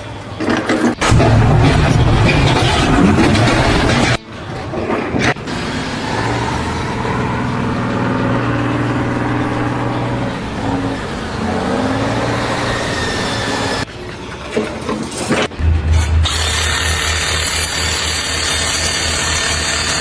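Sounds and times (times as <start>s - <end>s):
engine running: 0.9s - 20.0s.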